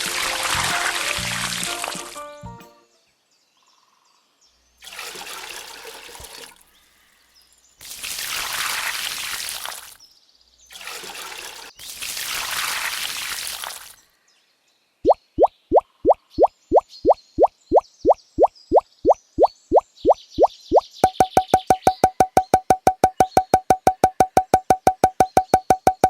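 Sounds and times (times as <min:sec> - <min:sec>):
water pouring: 0:00.0 - 0:02.2, 0:04.8 - 0:06.7, 0:07.8 - 0:10.0, 0:10.7 - 0:14.0
rising bloop sound effects: 0:19.4 - 0:26.0.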